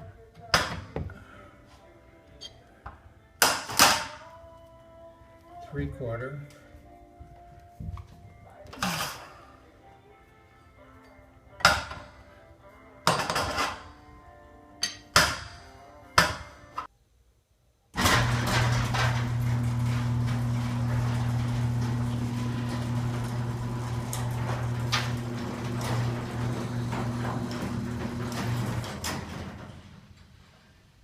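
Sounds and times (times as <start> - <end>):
metallic clanks of steel bars: 14.8 - 15.5.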